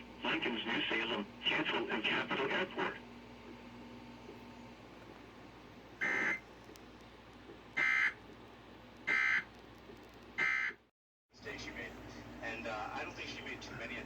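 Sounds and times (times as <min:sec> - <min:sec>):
harsh warbling data squawks: 0:06.0 - 0:06.4, 0:07.8 - 0:08.2, 0:09.1 - 0:09.5, 0:10.4 - 0:10.8.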